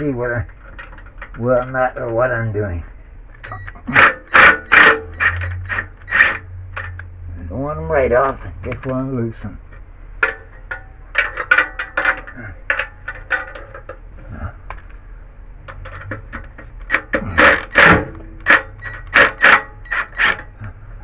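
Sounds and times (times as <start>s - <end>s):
wrenches clinking on metal bolts: 3.4s - 7.0s, 10.2s - 14.0s, 15.7s - 20.6s.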